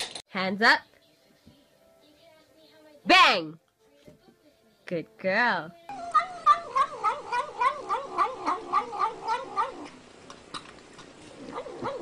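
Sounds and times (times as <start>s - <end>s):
pet animal wavering calls: 5.9s - 10.0s, 11.2s - 12.0s.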